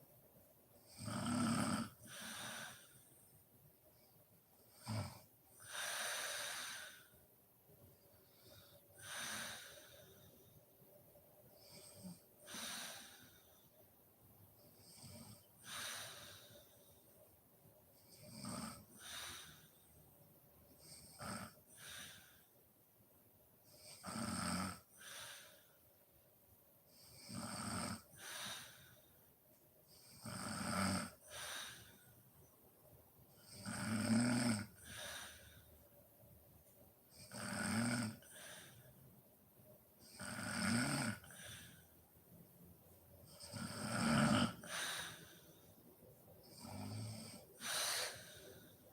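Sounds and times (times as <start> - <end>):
woman snoring: 0.9 - 2.9, 20.8 - 22.4, 23.8 - 25.6, 27.0 - 28.9, 30.0 - 31.9, 33.4 - 35.6, 37.1 - 38.8, 40.0 - 41.8, 43.3 - 45.4, 46.5 - 48.8.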